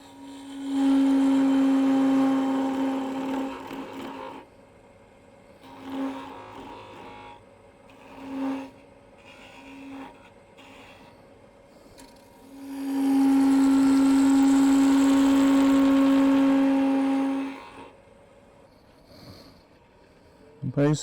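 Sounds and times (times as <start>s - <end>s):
wood lathe gouge whine: 0.0s - 4.5s, 5.6s - 11.2s, 11.9s - 18.0s.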